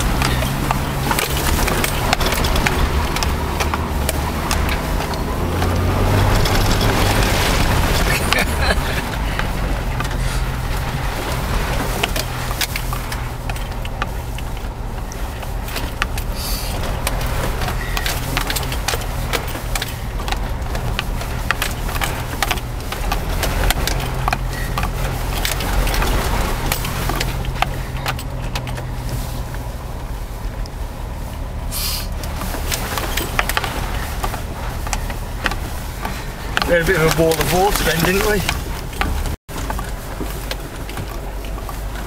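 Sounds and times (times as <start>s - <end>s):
car engine at low revs: 0.0s - 42.0s
vehicle knocks and rattles: 0.0s - 42.0s
brief rushing hiss: 31.7s - 32.2s.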